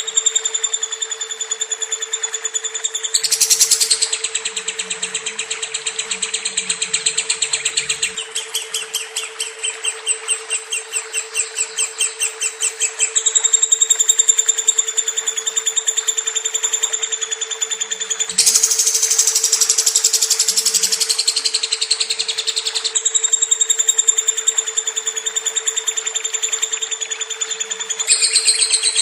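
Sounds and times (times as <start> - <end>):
lovebird chirping rapidly: 3.0 - 13.4, 18.3 - 22.7, 27.8 - 29.0.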